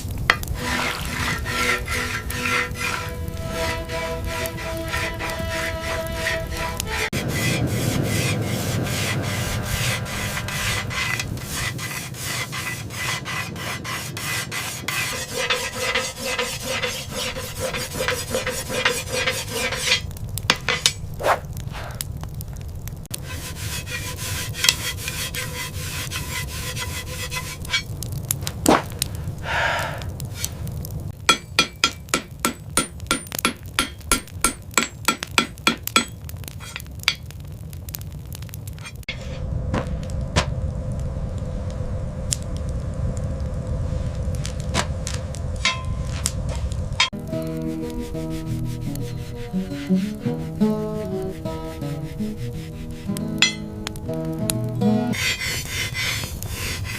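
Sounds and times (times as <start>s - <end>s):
hand tool rasping: 0.4s - 8.7s, 10.2s - 21.0s, 23.2s - 27.9s, 31.3s - 36.9s, 47.8s - 53.7s, 55.1s - 56.9s.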